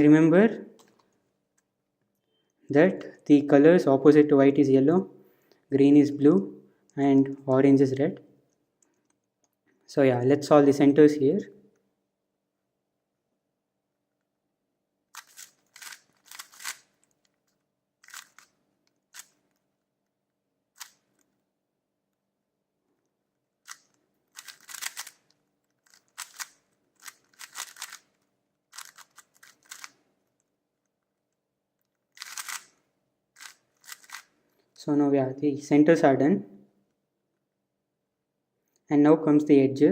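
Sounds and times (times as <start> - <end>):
plastic puzzle cube clicking: 15.1 - 17.4, 18.0 - 19.6, 20.8 - 21.3, 23.6 - 31.1, 31.8 - 32.8, 33.4 - 34.3.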